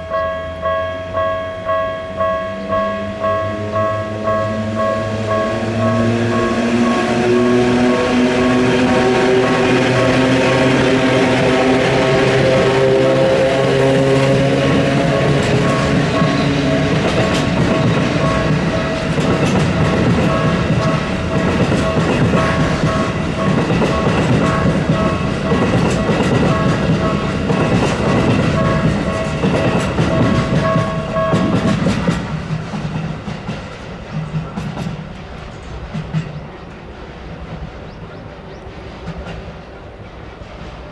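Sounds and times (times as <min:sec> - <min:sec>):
level-crossing bell beeping: 0:00.0 - 0:12.3, 0:15.0 - 0:31.7
train wheels clattering: 0:00.0 - 0:40.9.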